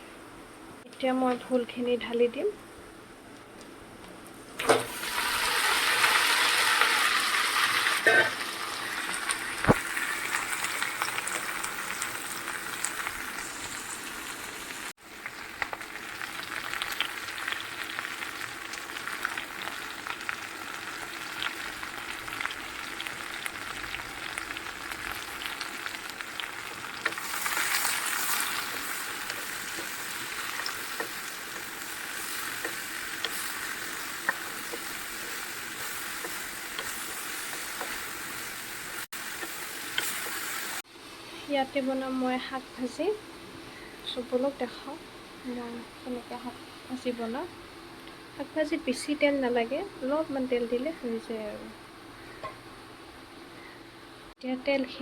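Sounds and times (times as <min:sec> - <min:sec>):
vegetables sizzling in hot oil: 0:04.6 - 0:40.9.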